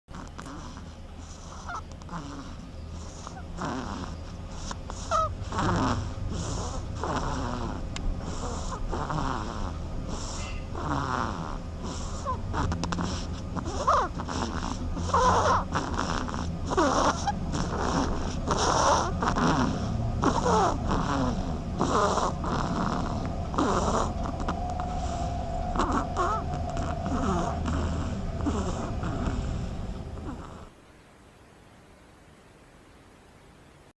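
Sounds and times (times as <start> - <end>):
duckling snoring: 0.1 - 30.8.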